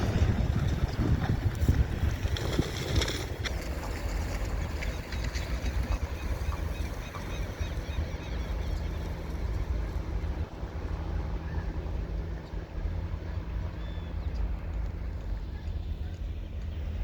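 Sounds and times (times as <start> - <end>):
wind on microphone: 0.0 - 8.2
diesel locomotive engine rumble: 0.0 - 17.0.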